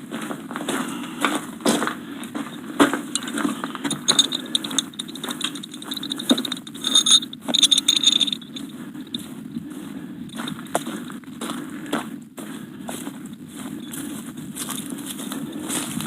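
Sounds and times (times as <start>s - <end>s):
metal parts clinking and rattling: 3.0s - 9.2s
bright metallic jingle: 3.1s - 8.7s.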